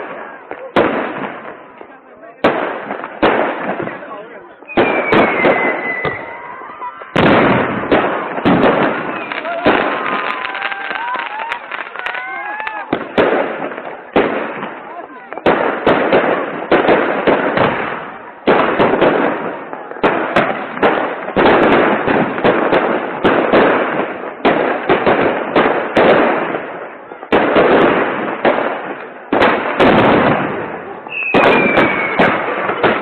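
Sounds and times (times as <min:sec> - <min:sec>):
fireworks and firecrackers banging: 0:00.0 - 0:33.0
falling whistle: 0:04.8 - 0:07.1, 0:31.1 - 0:32.2.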